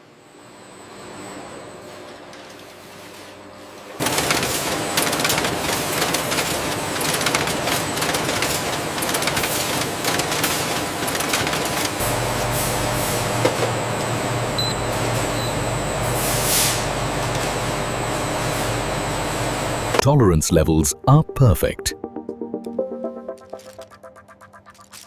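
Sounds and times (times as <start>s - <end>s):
machinery rapid clattering: 4.0s - 12.0s, 23.5s - 25.0s
steady low hum: 12.0s - 21.4s.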